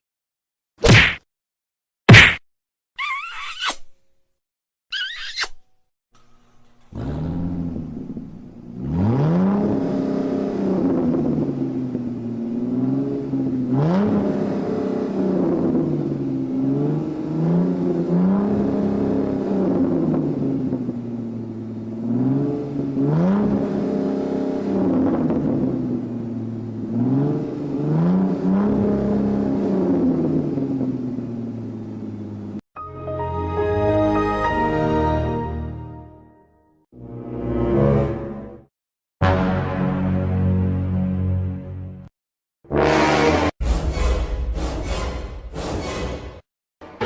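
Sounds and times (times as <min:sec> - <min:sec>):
car engine revving: 0:06.8 - 0:32.6, 0:42.7 - 0:43.6.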